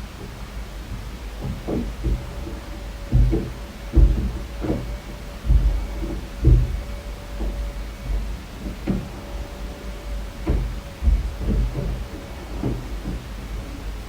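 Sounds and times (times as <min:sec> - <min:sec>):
faint steady hum: 0:00.0 - 0:14.0
dull deep thuds through building: 0:01.9 - 0:09.1.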